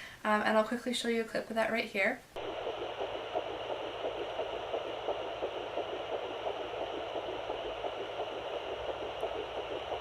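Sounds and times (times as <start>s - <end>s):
fetal heartbeat whooshing pulse: 2.4s - 10.0s
steady hiss: 2.4s - 10.0s.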